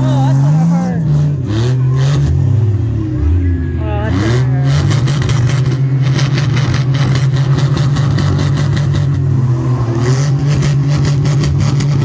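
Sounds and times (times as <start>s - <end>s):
car engines running loud: 0.0s - 12.0s.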